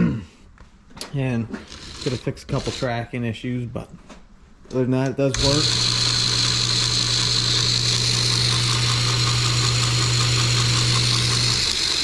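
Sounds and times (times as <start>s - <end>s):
electric motor humming: 1.6s - 2.9s, 5.3s - 12.0s
grinder belt hissing: 1.6s - 3.0s, 5.3s - 12.0s.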